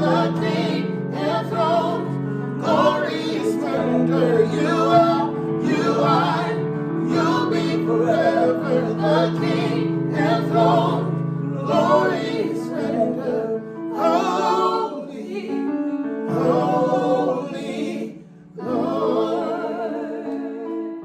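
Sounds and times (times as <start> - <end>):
voices singing gospel song: 0.0 - 21.0.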